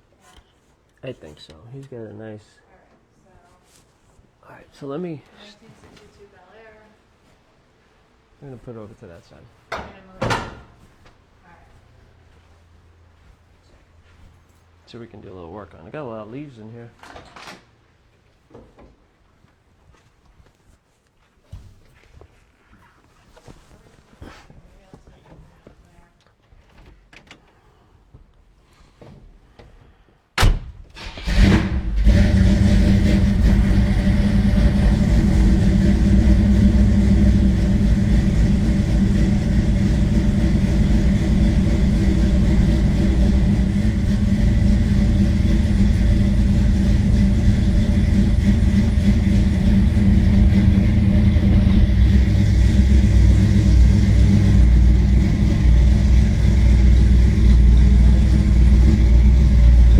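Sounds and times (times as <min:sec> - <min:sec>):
car engine cranking and running: 0:31.0 - 0:59.9.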